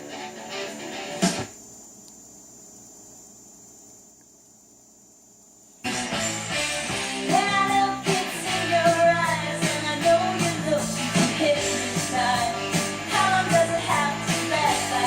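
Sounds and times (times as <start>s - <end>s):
rock song with singing: 6.0s - 15.0s.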